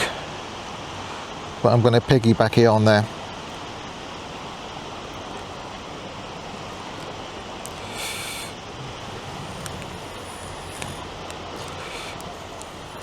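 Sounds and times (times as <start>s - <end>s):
sea surf washing on beach: 0.0s - 13.0s
louder surf hiss: 7.3s - 13.0s.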